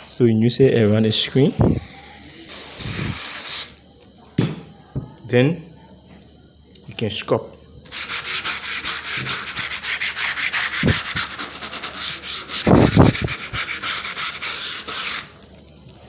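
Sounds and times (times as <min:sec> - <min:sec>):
paintbrush scrubbing: 0:07.9 - 0:15.3.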